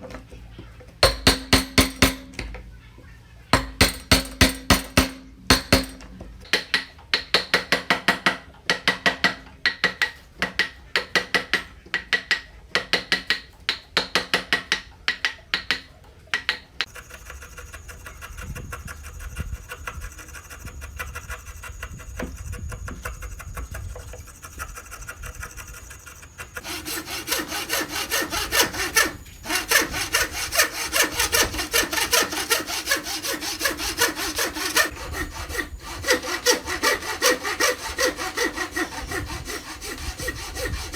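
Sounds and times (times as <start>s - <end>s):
hand saw cutting wood: 1.0s - 2.4s, 3.6s - 6.1s, 16.8s - 40.9s.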